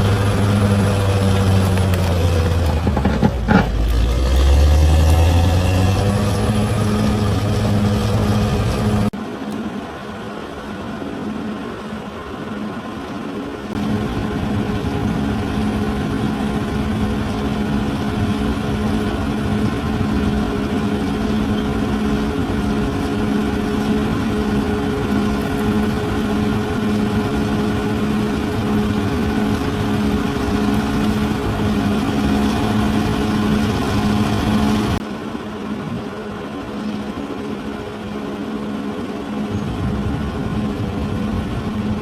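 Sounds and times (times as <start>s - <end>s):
bulldozer diesel engine running: 0.0s - 9.2s, 12.5s - 42.0s.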